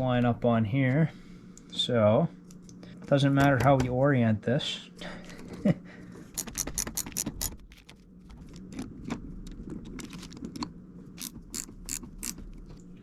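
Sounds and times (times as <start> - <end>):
metal parts clicking and clinking: 6.4 - 7.9.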